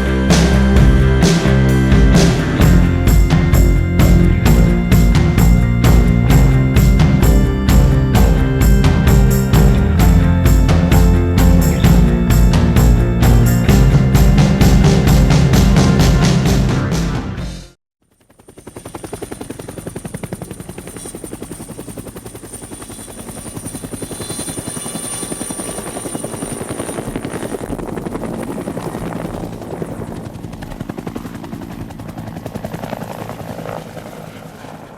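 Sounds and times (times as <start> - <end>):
high steady whine: 0.0 - 17.5
helicopter rotor beat: 0.0 - 34.9.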